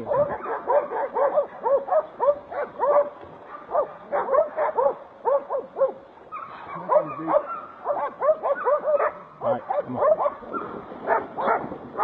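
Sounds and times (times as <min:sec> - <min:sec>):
dogs barking: 0:00.0 - 0:12.0.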